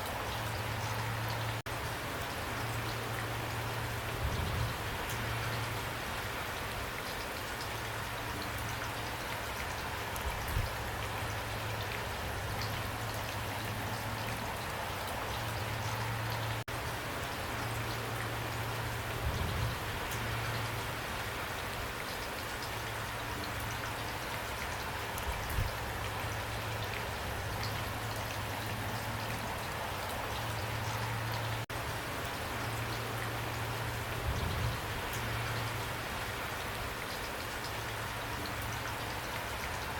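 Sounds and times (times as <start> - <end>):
heavy rain pouring: 0.0 - 39.9.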